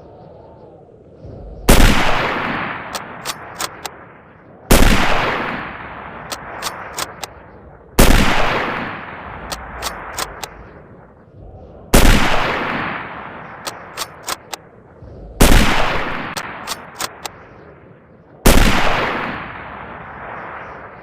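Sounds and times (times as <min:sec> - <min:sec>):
rifle shots echoing: 0:01.7 - 0:04.0, 0:04.7 - 0:07.3, 0:08.0 - 0:10.5, 0:11.9 - 0:14.6, 0:15.4 - 0:17.3, 0:18.4 - 0:20.9
rifle bolt metallic clicks: 0:02.8 - 0:04.0, 0:06.2 - 0:07.3, 0:09.4 - 0:10.5, 0:13.6 - 0:14.6, 0:16.3 - 0:17.4.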